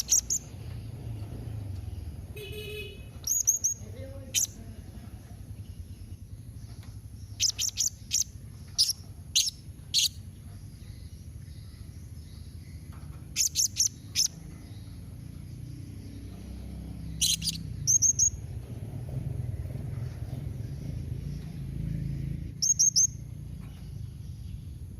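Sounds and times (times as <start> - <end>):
parrot chirping: 0.0 - 0.6, 3.2 - 4.6, 7.2 - 12.7, 13.3 - 15.1, 16.1 - 18.5, 22.6 - 23.2
steady low hum: 4.0 - 24.9.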